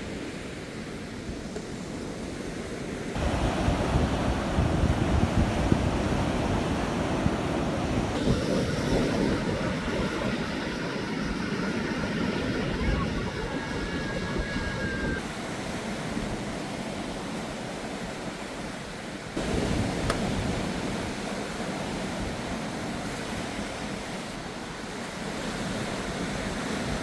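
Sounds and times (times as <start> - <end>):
sea waves washing ashore: 0.0 - 27.0
wind on microphone: 3.1 - 27.0.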